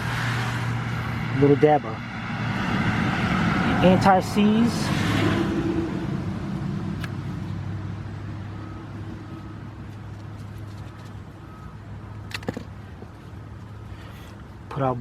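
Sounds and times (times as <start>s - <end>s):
sharp clicks of brake hardware: 12.3s - 12.7s.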